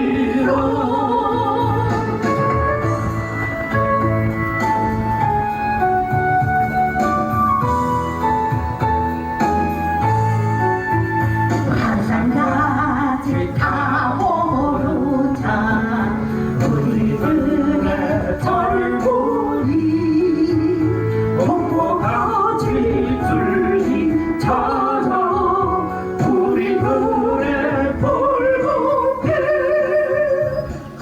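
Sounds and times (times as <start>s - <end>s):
person singing with vibrato: 0.0s - 4.0s, 11.2s - 31.0s
recorded instrumental backing: 0.0s - 31.0s.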